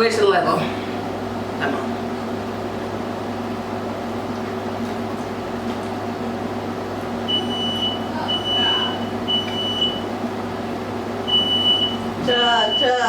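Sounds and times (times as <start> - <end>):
steady low hum: 0.0 - 13.0
smoke alarm beeping: 7.3 - 10.1, 11.2 - 13.0.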